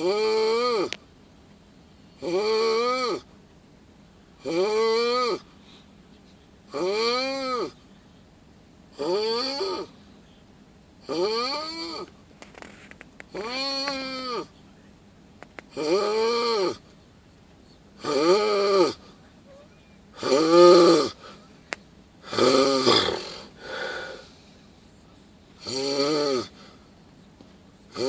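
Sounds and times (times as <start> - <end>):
person snoring: 6.7 - 7.8, 9.0 - 9.9, 13.3 - 14.5, 15.7 - 16.8, 18.0 - 19.0, 20.2 - 21.3, 22.2 - 24.3, 25.6 - 26.7.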